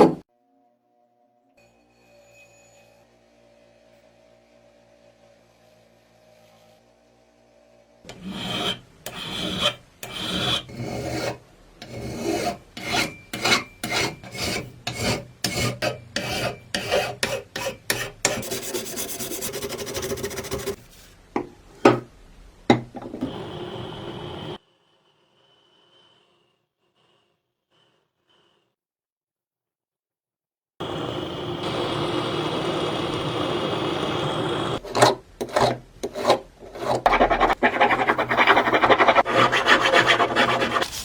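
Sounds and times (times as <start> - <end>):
hand file rasping: 8.1 - 20.9, 34.8 - 41.0.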